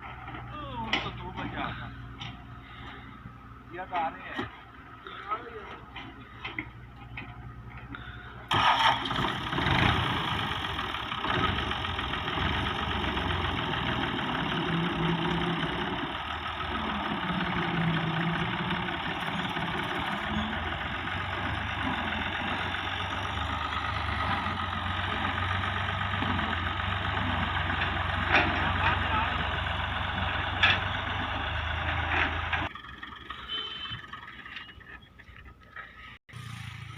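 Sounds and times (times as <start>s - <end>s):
excavator diesel engine running: 0.0s - 36.9s.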